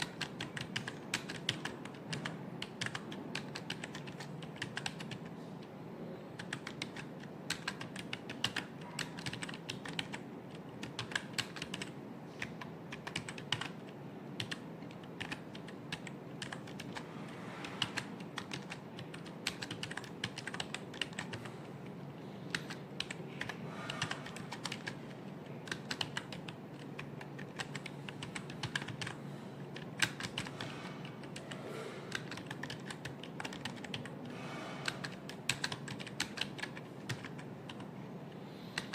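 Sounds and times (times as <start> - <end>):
computer keyboard typing: 0.0 - 5.4, 6.4 - 38.0
steady low hum: 0.0 - 38.9.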